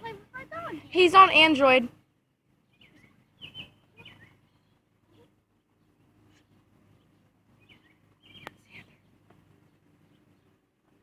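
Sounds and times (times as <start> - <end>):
faint bird chirps: 2.6 - 11.0.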